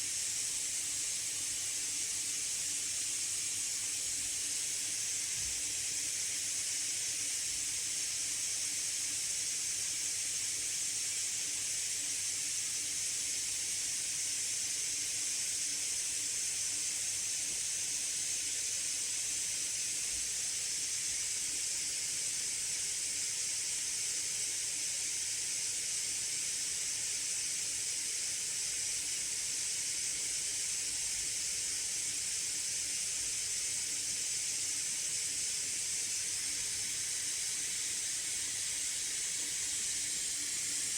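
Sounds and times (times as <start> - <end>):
laptop cooling fans hissing: 26.2 - 40.9.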